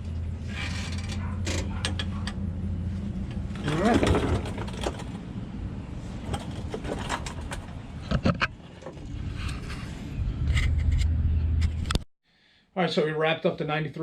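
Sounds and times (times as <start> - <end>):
low engine rumble: 0.0 - 12.0
sharp clicks and knocks: 3.3 - 5.3, 6.2 - 9.1.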